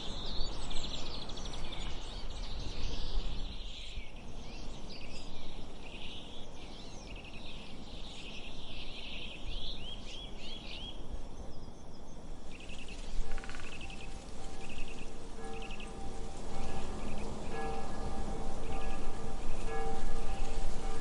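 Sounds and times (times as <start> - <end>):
small birds chirping: 0.0 - 21.0
steady musical tones: 13.0 - 21.0.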